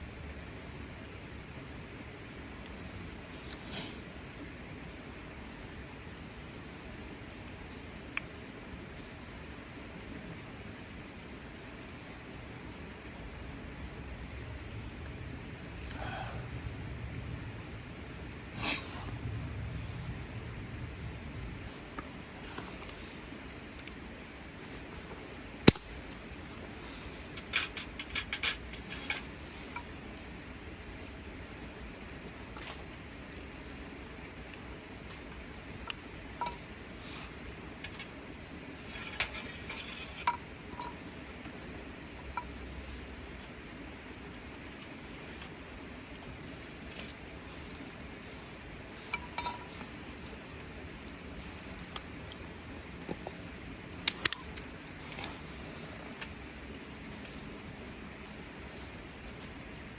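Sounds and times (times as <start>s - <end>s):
faint steady hiss: 0.0s - 59.9s
sharp click: 25.6s - 25.9s.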